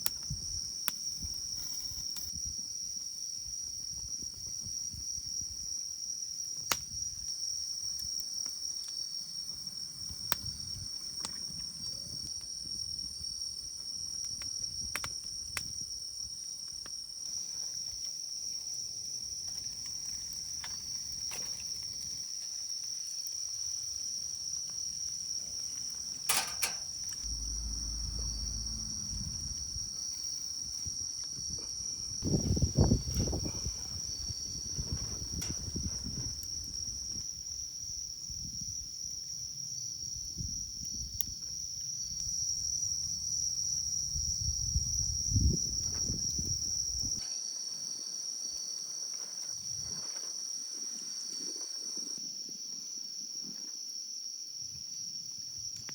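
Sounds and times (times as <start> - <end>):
insects chirring: 0.0 - 55.9
sharp click: 26.3 - 27.6
low knocking and rustling: 26.3 - 29.8.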